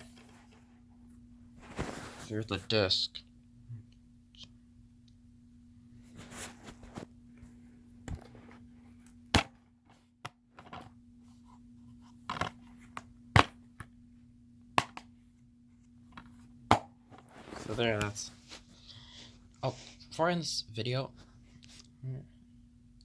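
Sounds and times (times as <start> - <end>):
soft rustling: 0.0 - 2.6, 6.0 - 9.0, 17.2 - 20.1.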